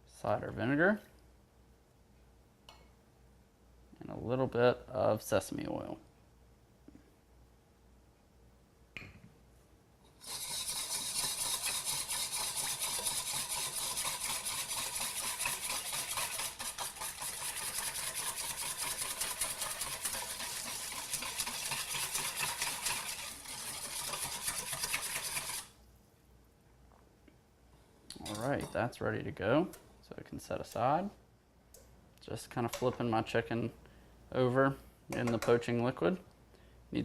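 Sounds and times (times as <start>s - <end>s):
dressing stirred in a bowl: 10.2s - 25.8s.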